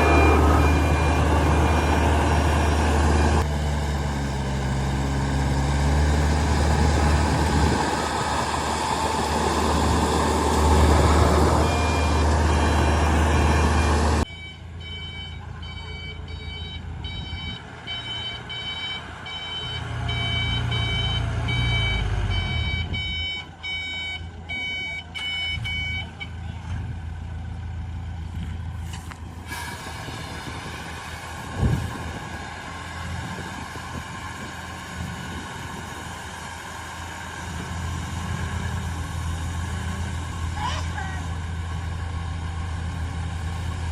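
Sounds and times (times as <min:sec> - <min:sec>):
reversing alarm beeping: 0:00.0 - 0:03.4, 0:11.5 - 0:26.2
heavy diesel engine running: 0:00.0 - 0:43.9.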